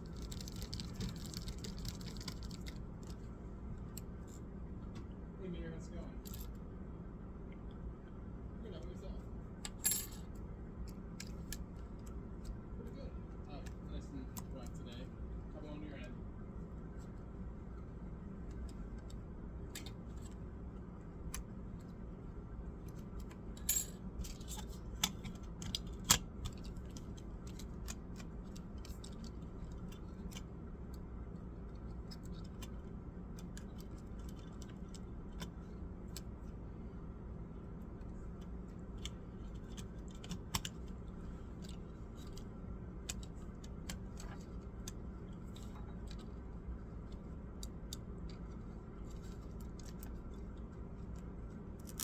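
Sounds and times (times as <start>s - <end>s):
clicks of laptop parts and tools: 22.8s - 30.5s, 39.0s - 41.0s, 41.6s - 46.4s.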